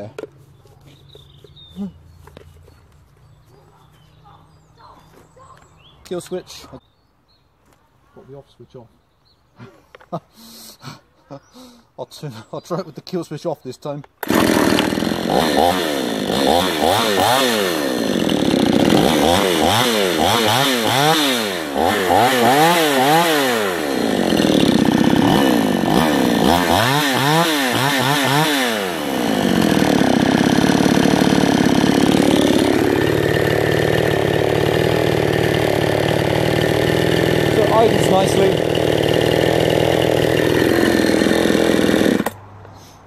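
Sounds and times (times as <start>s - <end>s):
chainsaw revving and idling: 14.2s - 42.4s.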